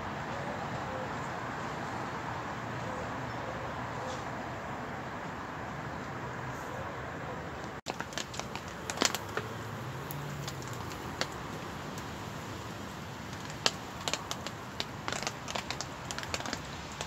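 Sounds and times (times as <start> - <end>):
rain hissing: 7.9 - 17.0
wood fire crackling: 7.9 - 17.0.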